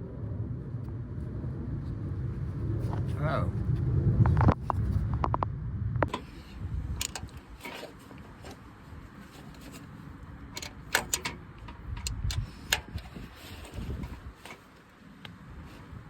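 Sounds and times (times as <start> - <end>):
low handling noise: 4.2 - 16.0
metallic clicks and clinks of tools: 7.0 - 7.9, 10.6 - 13.1.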